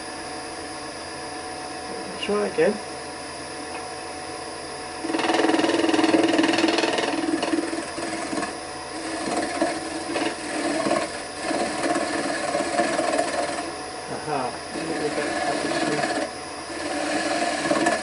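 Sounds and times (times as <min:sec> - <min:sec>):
lathe knife scraping wood: 0:05.0 - 0:18.0
wood lathe motor hum: 0:05.0 - 0:18.0.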